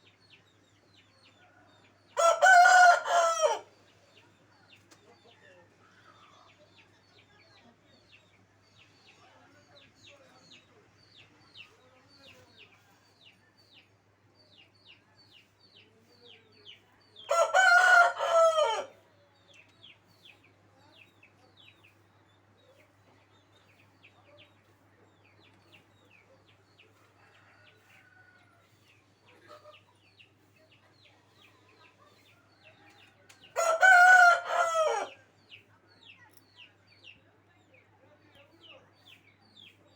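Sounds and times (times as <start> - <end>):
rooster crowing: 2.2 - 3.7, 17.3 - 18.9, 33.5 - 35.1.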